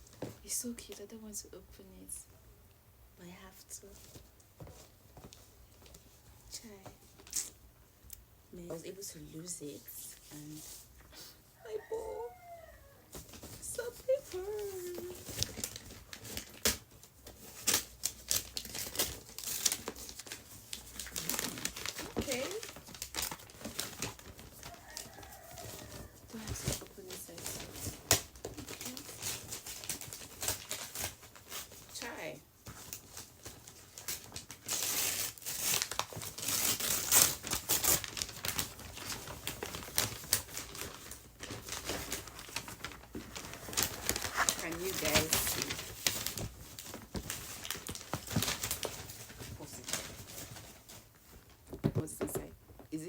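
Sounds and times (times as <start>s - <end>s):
paper crinkling: 11.8s - 53.0s
packaging ripping: 14.2s - 51.5s.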